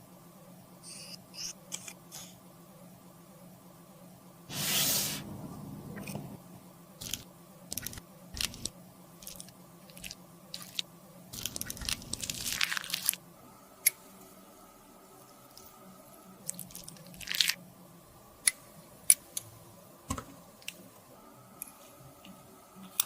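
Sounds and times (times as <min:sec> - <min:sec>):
cosmetics crunching and scraping: 0:07.0 - 0:10.8, 0:11.4 - 0:13.2, 0:16.4 - 0:17.6.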